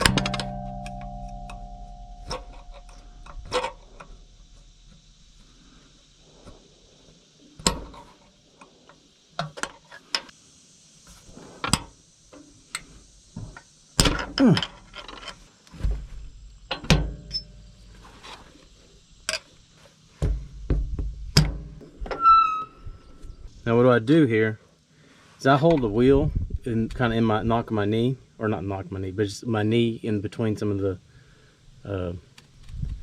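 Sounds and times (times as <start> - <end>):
metallic tool clinks and knocks: 0.0 - 5.0.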